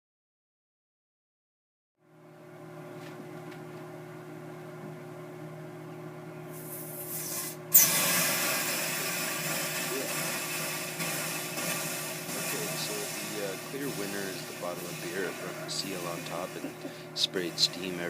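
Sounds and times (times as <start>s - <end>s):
microwave oven humming: 2.0s - 18.0s
steam hissing: 6.5s - 18.0s.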